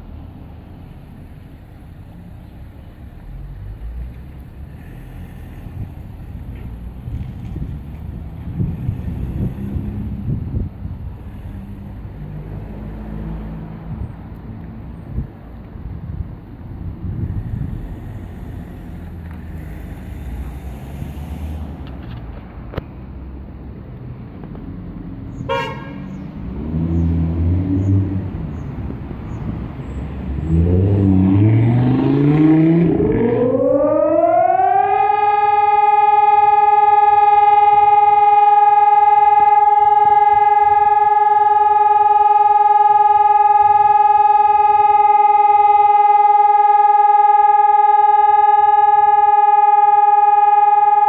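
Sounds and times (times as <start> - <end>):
civil defence siren wailing: 4.6 - 22.4, 25.5 - 51.0.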